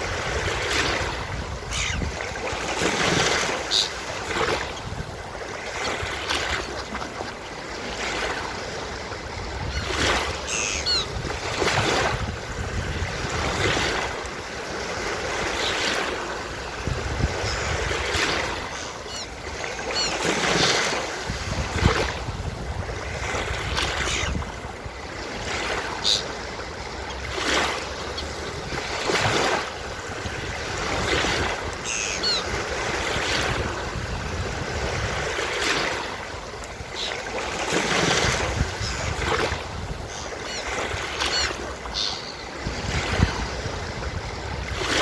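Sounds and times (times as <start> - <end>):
surf washing onto beach: 0.0 - 45.0
seagulls calling: 1.5 - 2.3, 3.3 - 4.2, 9.6 - 12.0, 14.6 - 16.2, 17.2 - 21.1, 23.9 - 24.5, 25.6 - 29.5, 31.0 - 33.0, 36.7 - 37.5, 38.1 - 43.5.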